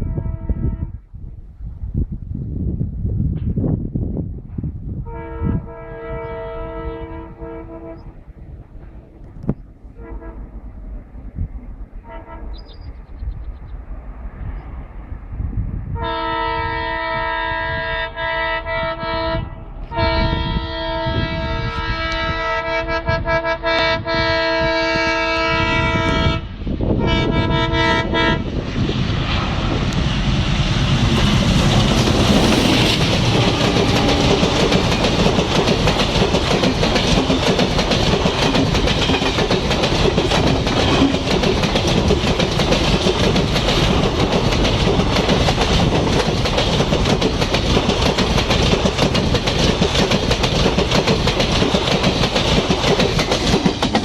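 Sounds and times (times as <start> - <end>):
locomotive horn blasts: 0.0 - 1.0, 5.0 - 8.1, 10.0 - 10.5, 12.0 - 12.6, 16.0 - 28.5, 33.4 - 34.8
train wheels clattering over rails: 29.9 - 54.0.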